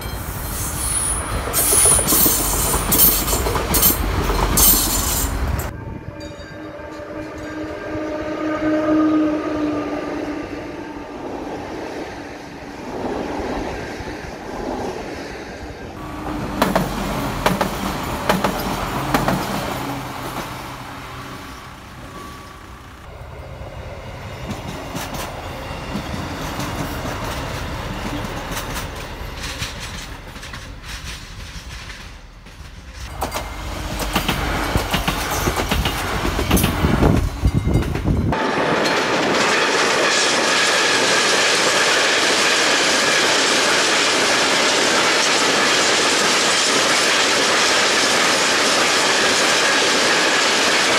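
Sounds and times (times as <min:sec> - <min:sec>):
rush of passing train: 0:00.0 - 0:50.9
train wheels clattering over rail joints: 0:01.4 - 0:05.7, 0:16.2 - 0:20.9, 0:24.4 - 0:50.9.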